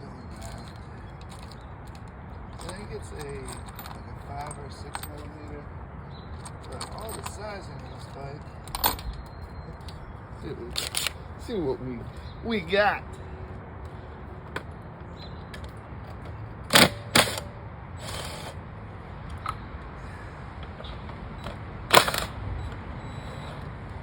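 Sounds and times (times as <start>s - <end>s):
tools and parts clicking and knocking: 0.3s - 5.4s, 6.3s - 10.0s, 10.7s - 11.2s, 15.5s - 18.6s, 19.2s - 19.6s, 20.6s - 23.7s.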